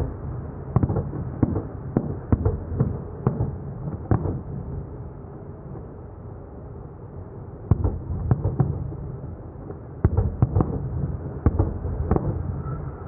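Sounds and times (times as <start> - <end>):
fireworks bangs: 0.0 - 4.6, 10.0 - 13.0.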